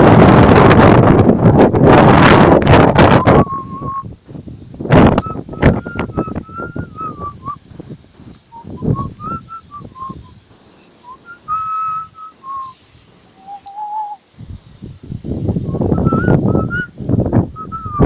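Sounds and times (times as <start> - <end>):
person whistling: 3.1 - 4.1, 5.2 - 7.7, 8.5 - 10.4, 11.0 - 12.8, 13.4 - 14.2, 15.7 - 17.0, 17.6 - 18.0
rustling: 4.3 - 16.2.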